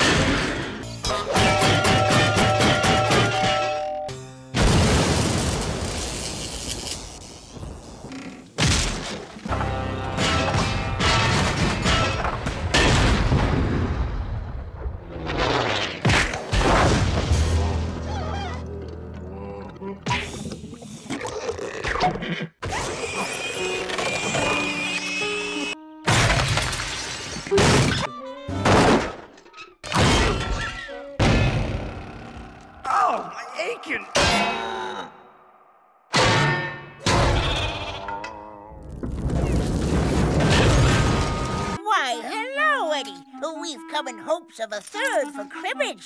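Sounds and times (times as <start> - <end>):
cartoon crash: 39.2 - 41.8.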